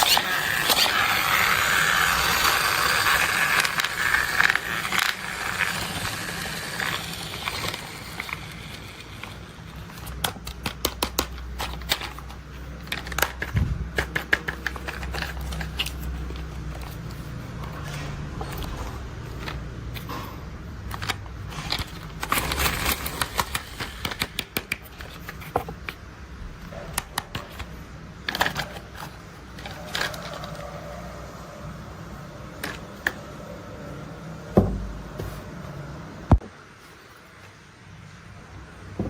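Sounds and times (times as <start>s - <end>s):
toy vehicles rattling: 0.0s - 25.8s, 26.9s - 31.3s.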